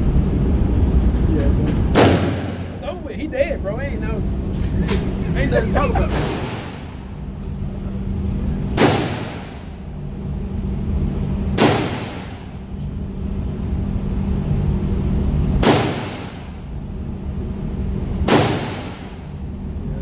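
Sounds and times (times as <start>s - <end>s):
steady low hum: 0.0s - 20.0s
gunshots with echo: 1.9s - 2.8s, 6.1s - 7.0s, 8.8s - 9.8s, 11.6s - 12.5s, 15.6s - 16.6s, 18.3s - 19.2s.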